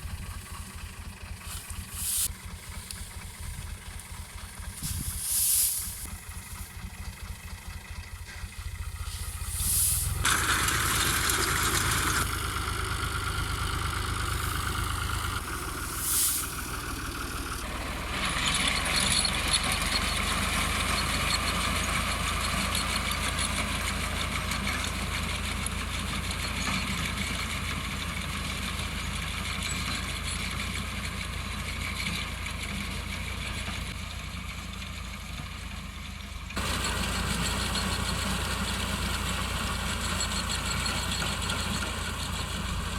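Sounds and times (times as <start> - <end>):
machinery whirring: 0.0 - 19.2
tractor engine running: 0.0 - 42.9.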